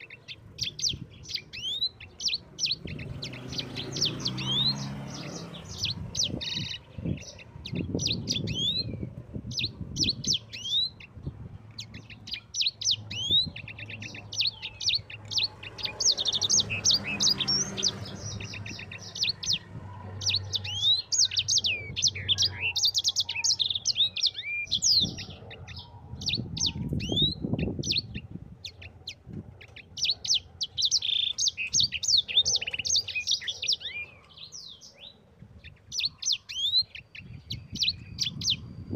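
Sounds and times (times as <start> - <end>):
songbird singing chirps and trills: 0.0 - 38.9.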